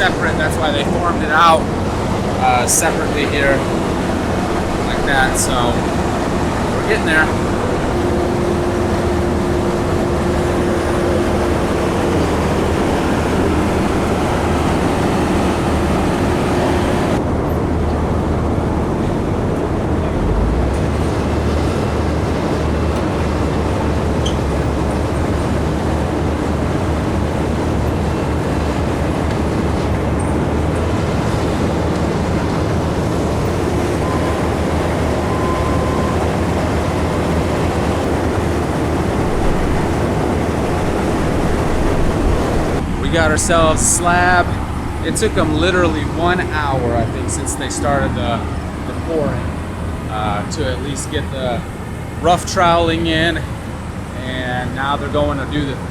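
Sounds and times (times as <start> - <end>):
diesel engines droning: 0.0 - 55.9.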